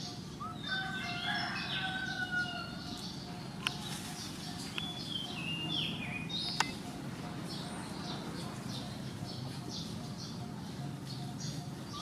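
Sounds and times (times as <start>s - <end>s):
chirping whistled animal calls: 3.7s - 12.0s.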